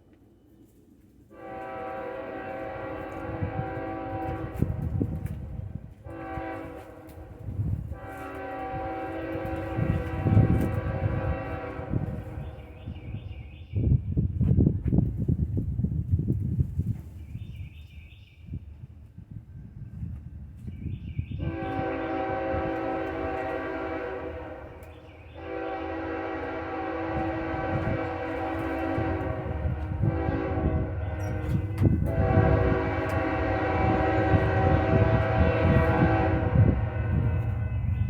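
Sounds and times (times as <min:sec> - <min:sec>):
low rumble of train: 0:00.0 - 0:38.0
locomotive air horn blasts: 0:01.3 - 0:05.3, 0:06.0 - 0:12.8, 0:21.4 - 0:38.0.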